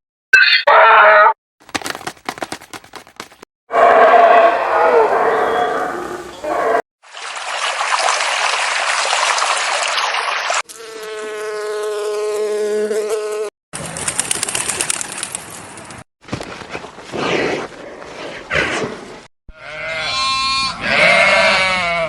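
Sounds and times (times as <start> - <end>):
insect hissing buzz: 10.7 - 13.5.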